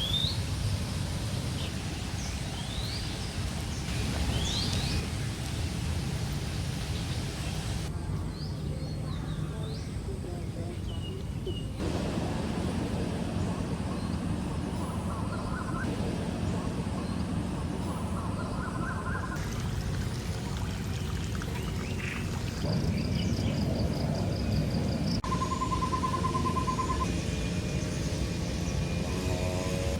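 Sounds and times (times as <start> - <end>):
birds calling: 1.4 - 7.9, 10.4 - 19.9, 20.5 - 27.1
low background rumble: 11.6 - 28.7
high-pitched bird trills: 25.2 - 27.1.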